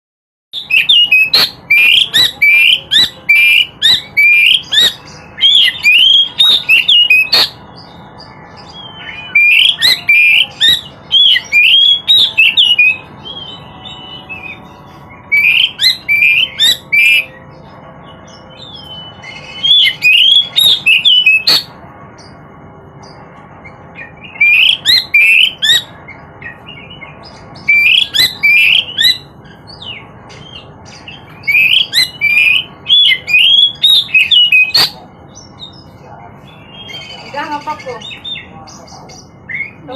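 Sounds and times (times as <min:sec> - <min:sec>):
bird singing whistled notes: 0:00.6 - 0:17.5, 0:18.3 - 0:22.4, 0:24.0 - 0:35.9, 0:36.5 - 0:38.5.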